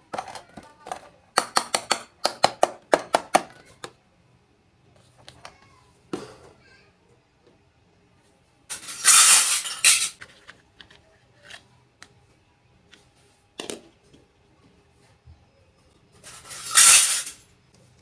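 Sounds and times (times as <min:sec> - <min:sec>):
hissy handling noise: 0:08.7 - 0:11.6, 0:16.2 - 0:17.5.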